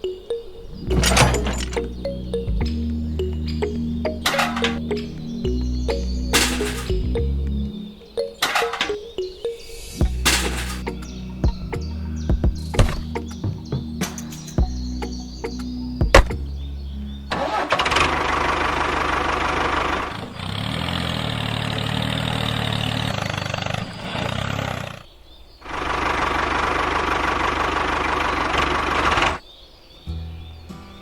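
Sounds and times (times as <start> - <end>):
low hum: 0.6 - 8.0, 9.8 - 17.4.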